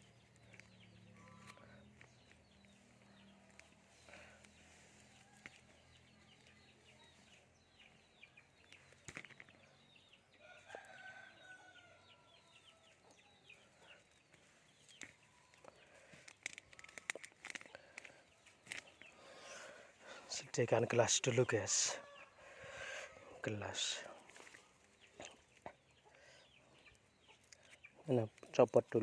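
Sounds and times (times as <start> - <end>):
rooster crowing: 10.4 - 12.3.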